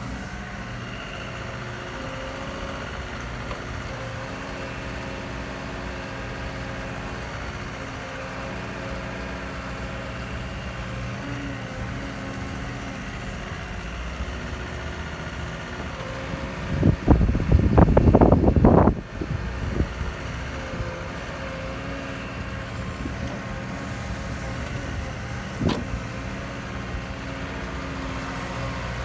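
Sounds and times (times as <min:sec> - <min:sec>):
excavator diesel engine idling: 0:00.0 - 0:29.0
wind buffeting microphone: 0:15.9 - 0:21.2.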